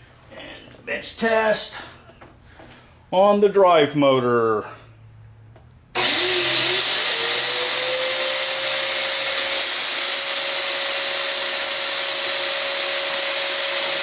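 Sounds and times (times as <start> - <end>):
vacuum motor whining: 6.0 - 14.0.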